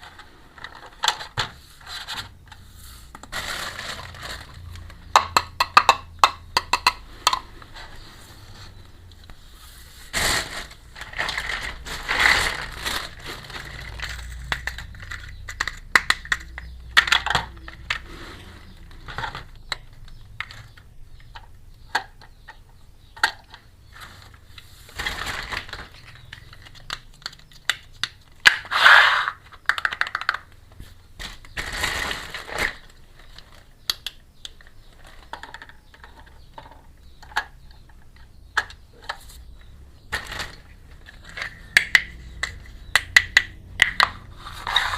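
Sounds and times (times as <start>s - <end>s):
plastic packaging rustling: 3.0s - 5.1s, 9.8s - 15.4s, 24.0s - 27.4s, 31.2s - 33.8s, 40.1s - 41.8s
plastic toy pieces clicking: 13.8s - 18.0s, 25.4s - 30.6s.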